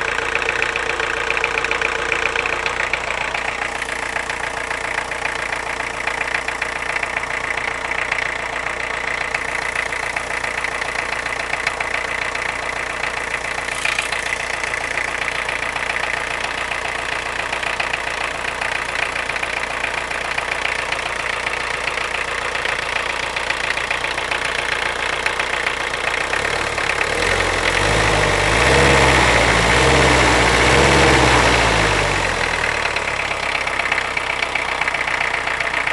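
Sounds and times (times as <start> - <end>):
car engine idling with knocking: 0.0 - 35.9
car engine revving: 13.1 - 16.2, 26.2 - 35.9.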